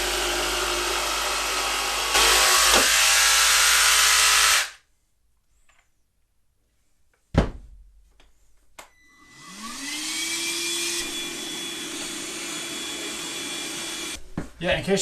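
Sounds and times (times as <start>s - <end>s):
vacuum cleaner motor whining: 8.9s - 14.2s.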